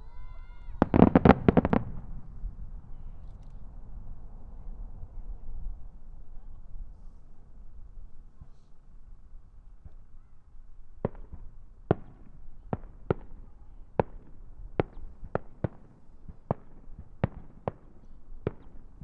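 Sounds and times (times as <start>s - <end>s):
fireworks bursting with bangs: 0.7s - 3.5s, 11.0s - 19.0s.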